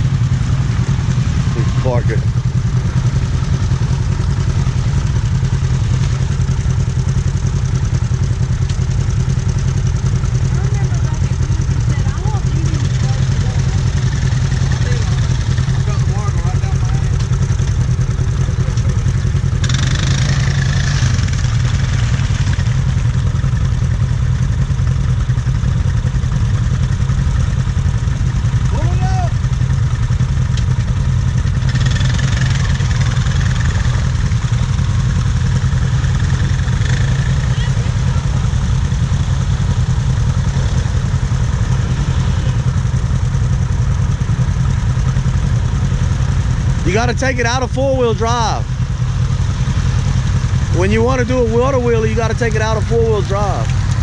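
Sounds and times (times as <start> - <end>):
atv engine droning: 0.0 - 54.0.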